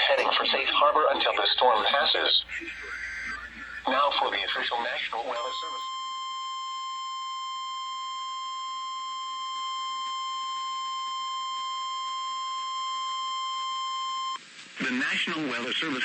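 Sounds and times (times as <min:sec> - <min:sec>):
high-pitched alarm tone: 0:05.4 - 0:14.4.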